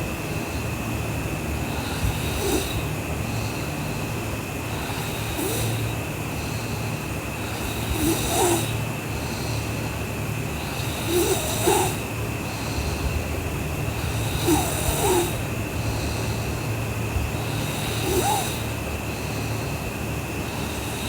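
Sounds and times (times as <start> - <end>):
steady low hum: 0.0 - 21.0
girl snoring: 1.6 - 3.6, 4.6 - 9.7, 10.5 - 13.2, 13.8 - 16.5, 17.3 - 19.6, 20.5 - 21.0.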